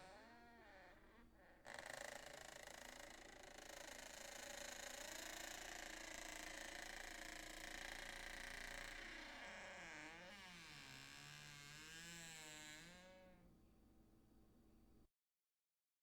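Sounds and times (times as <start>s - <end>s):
door hinge creaking: 6.2s - 13.4s.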